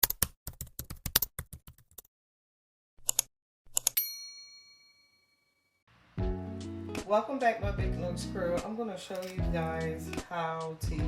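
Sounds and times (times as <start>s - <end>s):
bell-like ding: 4.0s - 5.8s.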